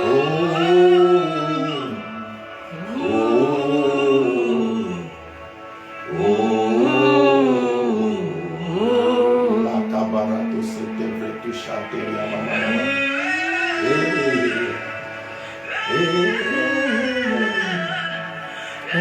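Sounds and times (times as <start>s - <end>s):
person singing long notes: 0.0s - 19.0s.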